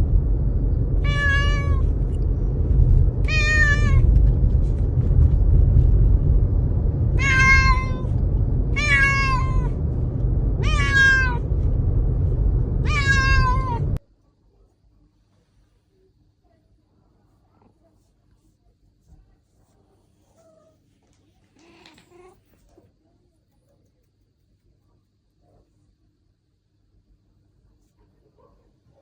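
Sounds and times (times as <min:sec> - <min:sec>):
low rumble: 0:00.0 - 0:14.0
cat meowing: 0:01.0 - 0:01.9, 0:03.2 - 0:04.1, 0:07.2 - 0:09.8, 0:10.6 - 0:11.4, 0:12.8 - 0:14.0, 0:21.6 - 0:22.6.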